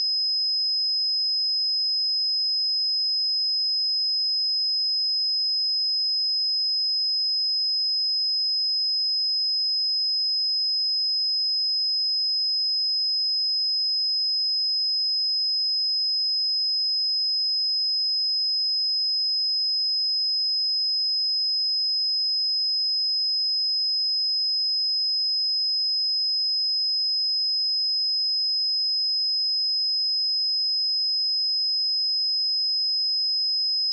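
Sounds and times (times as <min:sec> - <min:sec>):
high-pitched sine-wave test tone: 0:24.2 - 0:33.9.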